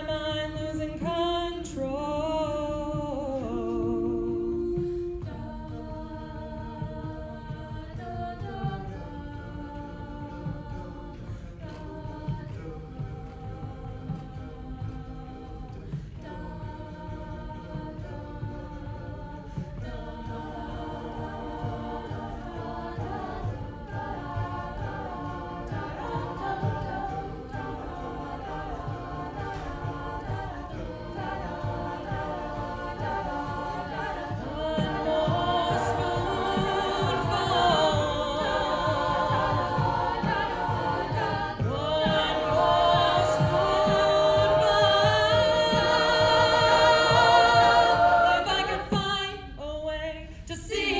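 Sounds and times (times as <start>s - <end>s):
vocal group singing in harmony: 0.0s - 50.9s.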